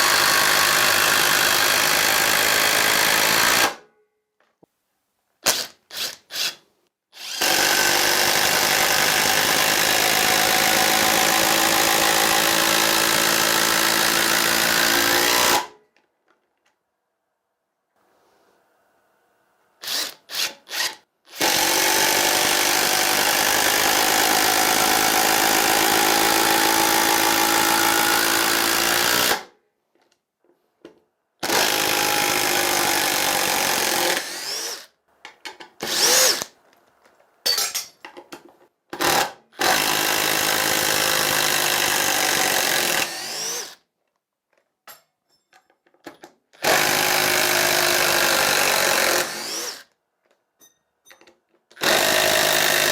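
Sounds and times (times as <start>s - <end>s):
impact driver hammering screws: 51.8s - 52.9s.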